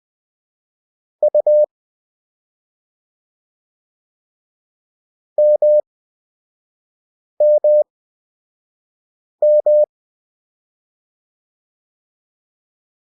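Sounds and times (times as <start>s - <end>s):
morse code beeps: 1.3s - 1.7s, 5.4s - 5.8s, 7.4s - 7.8s, 9.4s - 9.9s.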